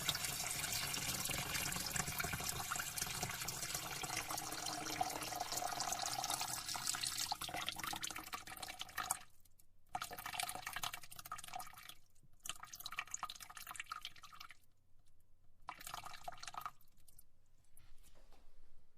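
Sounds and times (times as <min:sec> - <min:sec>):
water running from a tap: 0:00.0 - 0:08.9.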